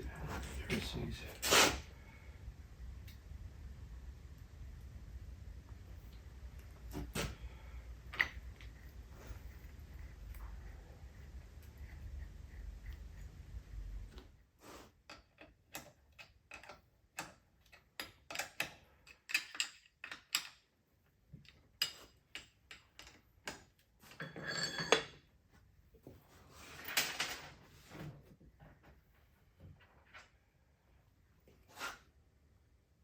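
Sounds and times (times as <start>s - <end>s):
metal tools clinking: 24.1s - 25.2s.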